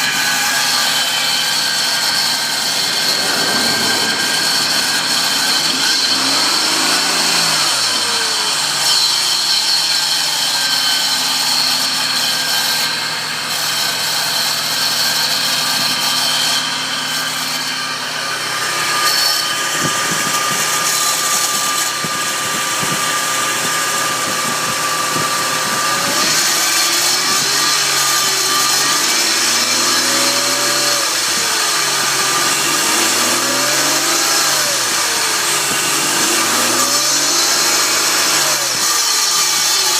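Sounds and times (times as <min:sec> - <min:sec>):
high-pitched whine: 0:00.0 - 0:09.2
car engine idling and revving: 0:00.0 - 0:10.3, 0:19.7 - 0:39.9.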